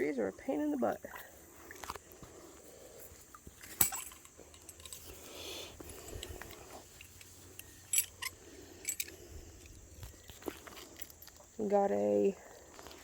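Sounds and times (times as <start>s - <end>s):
small metal clinks: 3.6s - 5.2s, 5.8s - 11.4s.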